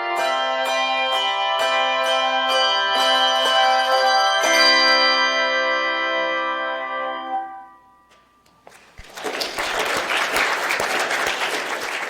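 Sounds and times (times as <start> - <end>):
audience applause: 8.7 - 12.0.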